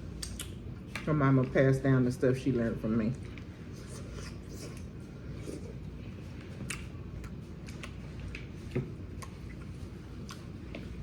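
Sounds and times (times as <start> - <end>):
low background hum: 0.0 - 11.0
chewing clicks and smacks: 0.2 - 1.1, 6.4 - 8.5, 9.1 - 10.9.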